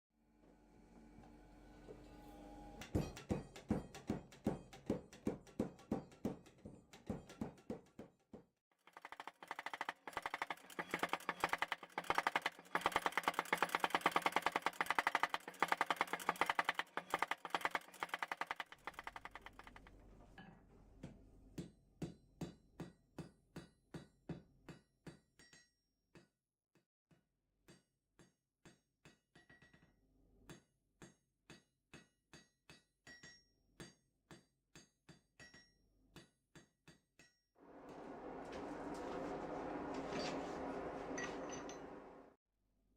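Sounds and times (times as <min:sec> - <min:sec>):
hammer striking anvil ringing: 0:02.7 - 0:07.7, 0:40.1 - 0:42.3.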